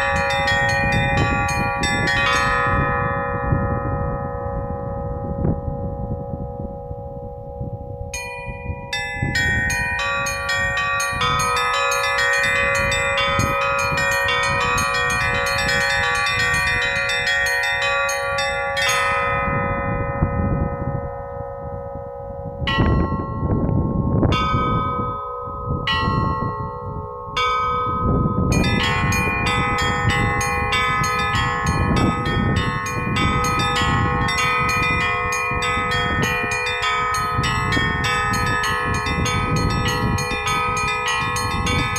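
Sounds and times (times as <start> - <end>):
small treble bells in quick runs: 0.0 - 4.2, 8.1 - 20.7, 24.4 - 41.9
hum of larger bells: 0.0 - 41.9.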